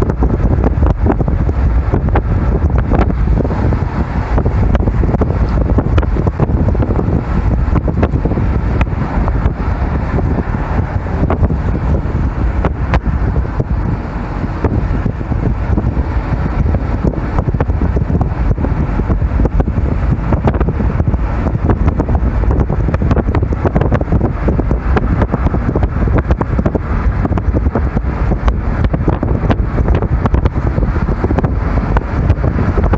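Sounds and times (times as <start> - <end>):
car driving on road: 0.0 - 32.9
wind buffeting microphone: 0.0 - 32.9.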